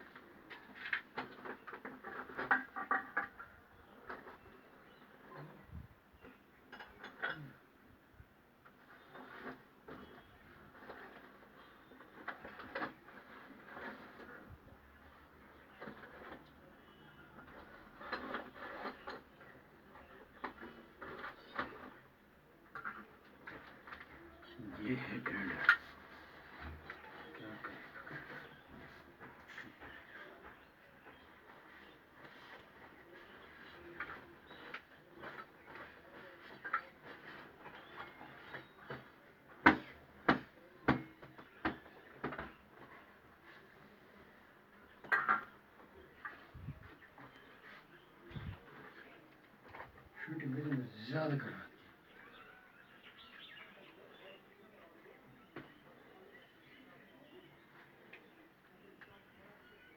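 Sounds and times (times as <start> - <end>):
tools and pipe fittings scraping: 17.4 - 22.1.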